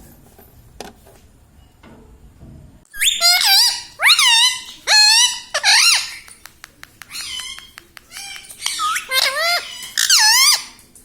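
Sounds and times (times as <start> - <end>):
parakeet screeching: 3.0 - 6.3, 7.1 - 10.8.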